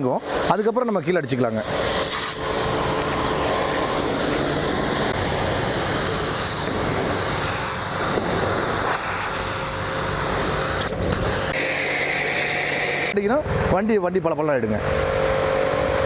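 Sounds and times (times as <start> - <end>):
water jet hissing: 0.0 - 11.6
pressure washer motor humming: 0.0 - 13.8, 14.8 - 16.0.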